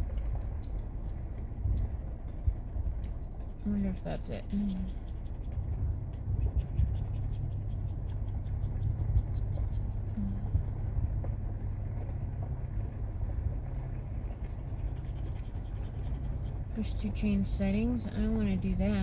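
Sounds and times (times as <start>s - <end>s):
faint ticks and rattles: 0.0s - 19.0s
truck engine and tyres rumbling: 0.0s - 19.0s.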